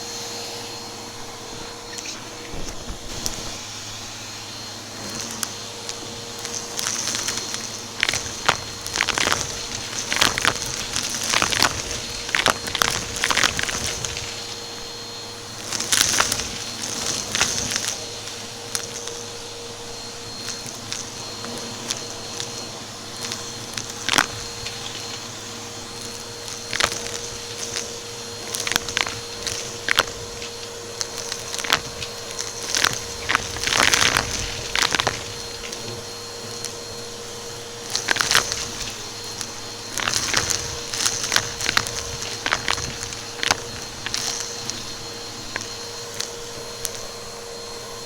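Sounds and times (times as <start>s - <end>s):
debris crackling in vacuum: 0.0s - 48.0s
vacuum cleaner motor whine: 0.0s - 48.0s.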